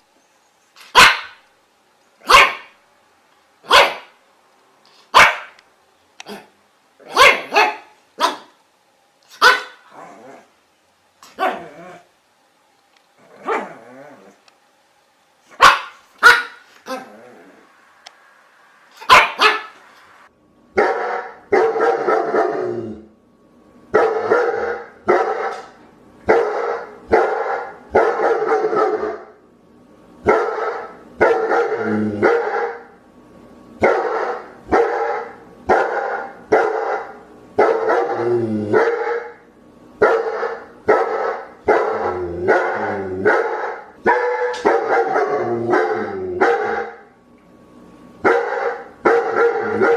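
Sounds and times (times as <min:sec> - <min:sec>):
dog barking: 0:00.9 - 0:01.4, 0:02.2 - 0:02.8, 0:03.6 - 0:04.2, 0:05.1 - 0:05.6, 0:06.3 - 0:08.6, 0:09.3 - 0:09.8, 0:11.4 - 0:11.8, 0:15.6 - 0:17.1, 0:19.0 - 0:19.8, 0:20.8 - 0:22.6, 0:24.0 - 0:29.3, 0:30.3 - 0:32.9, 0:33.8 - 0:38.1, 0:40.0 - 0:42.7, 0:43.3 - 0:47.0, 0:48.2 - 0:49.9.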